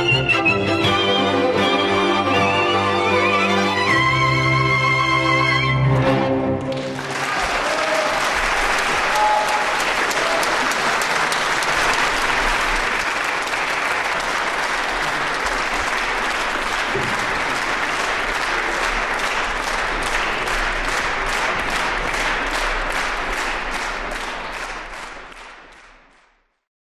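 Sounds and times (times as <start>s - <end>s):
audience applauding: 5.9s - 26.6s
rhythmic clapping in unison: 5.9s - 26.6s.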